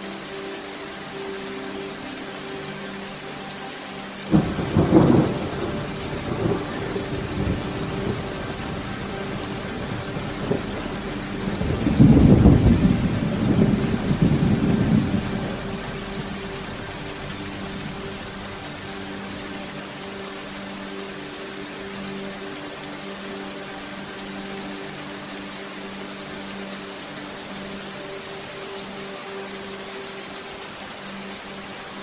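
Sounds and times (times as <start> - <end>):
steady rain: 0.0 - 32.0
thunder crack and rumble: 11.5 - 15.5.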